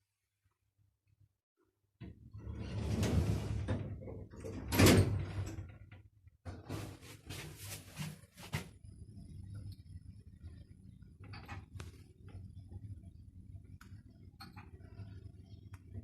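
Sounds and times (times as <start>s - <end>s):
lift doors sliding: 2.3s - 5.7s.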